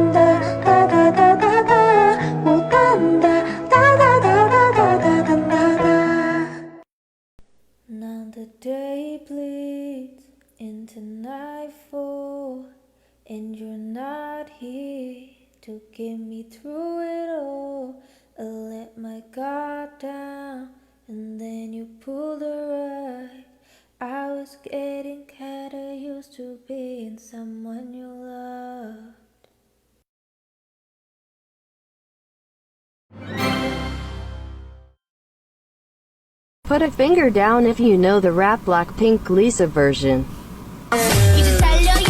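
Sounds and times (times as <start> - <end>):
woman singing a cappella: 0.0 - 6.8, 7.8 - 29.5, 36.7 - 42.0
backing music: 33.2 - 34.9, 40.9 - 42.0.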